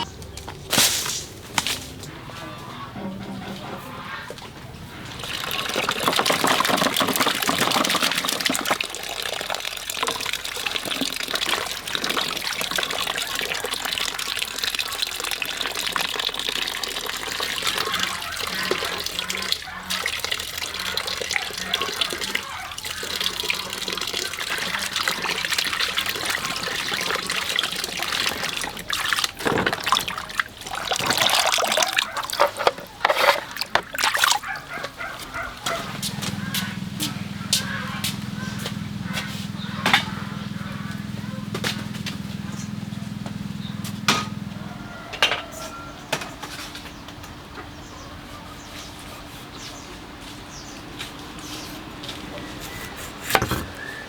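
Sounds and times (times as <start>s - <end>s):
running water splashing: 5.0s - 44.5s.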